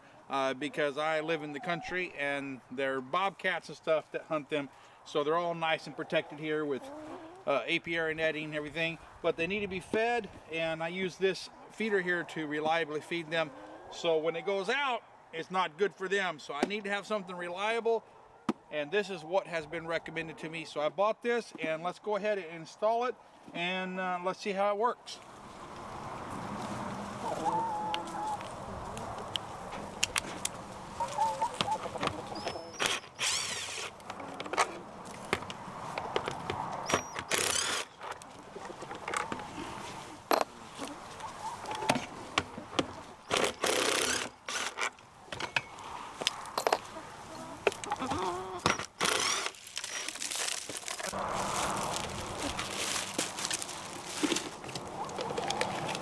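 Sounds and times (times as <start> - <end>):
packaging rustling and crinkling: 49.3 - 56.0.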